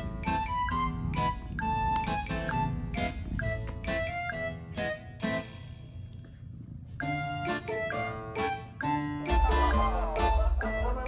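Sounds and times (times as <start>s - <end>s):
plucked melody: 7.0s - 11.0s
deep bass line: 9.3s - 11.0s.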